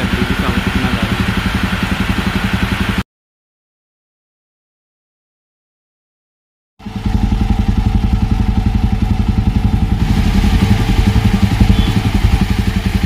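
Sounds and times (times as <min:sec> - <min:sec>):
motorcycle engine running: 0:00.0 - 0:03.0, 0:06.8 - 0:13.0.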